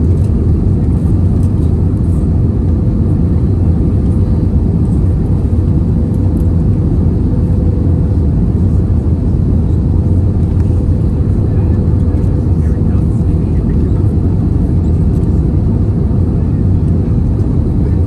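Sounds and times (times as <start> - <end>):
airplane cabin engine rumble: 0.0 - 18.0.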